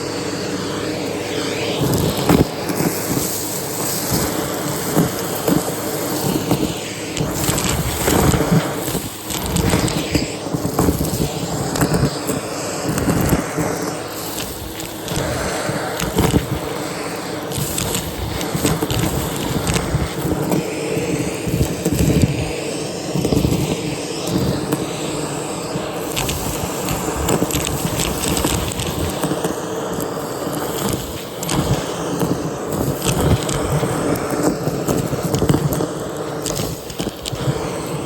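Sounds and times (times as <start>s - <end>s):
vacuum cleaner motor hum: 0.0s - 38.0s
brush scratching and rubbing: 0.3s - 38.0s.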